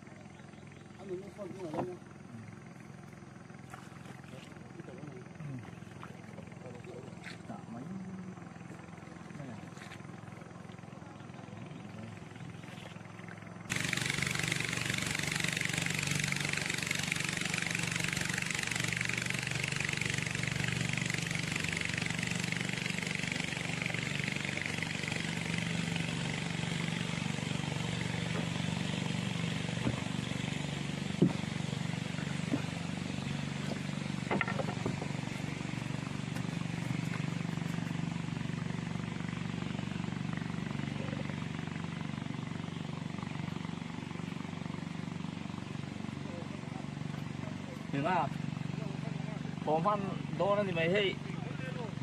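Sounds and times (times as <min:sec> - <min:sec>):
small engine running: 0:00.0 - 0:52.0.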